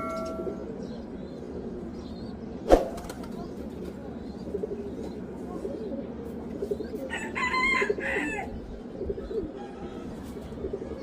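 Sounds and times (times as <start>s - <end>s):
pigeons cooing: 0.0s - 11.0s
rooster crowing: 7.1s - 8.5s.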